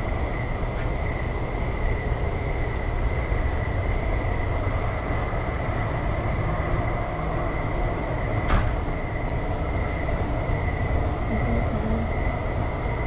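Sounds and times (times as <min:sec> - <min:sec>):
background rumble and hiss: 0:00.0 - 0:13.0
thin high tone: 0:11.3 - 0:12.1.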